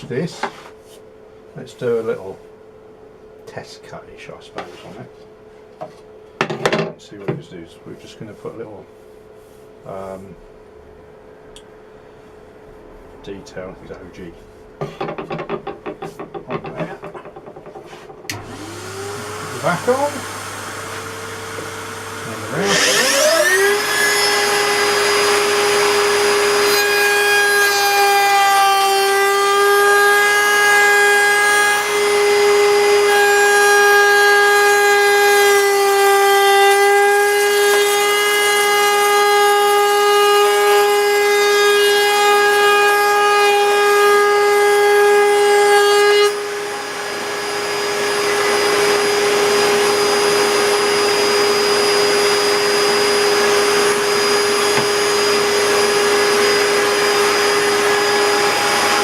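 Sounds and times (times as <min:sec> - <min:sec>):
wood router whining: 0:15.0 - 0:59.0
dust extraction vacuum hissing: 0:18.3 - 0:26.7, 0:46.3 - 0:59.0
router bit cutting wood: 0:18.3 - 0:59.0.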